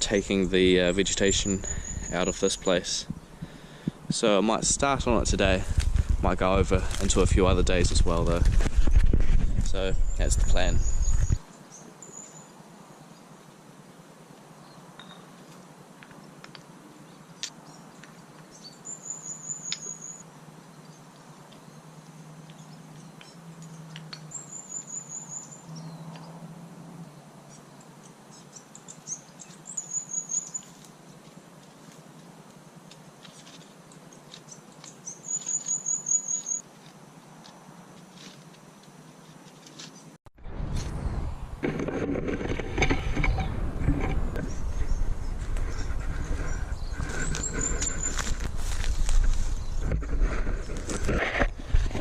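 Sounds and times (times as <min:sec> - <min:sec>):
small animal chirping call: 0:28.3 - 0:30.8, 0:34.9 - 0:36.6.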